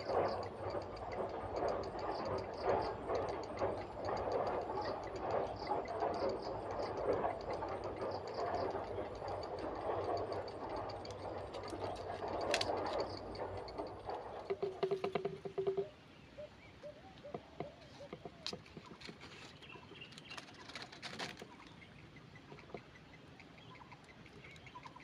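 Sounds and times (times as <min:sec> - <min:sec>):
heron nestlings ticking chatter: 0:00.0 - 0:25.0.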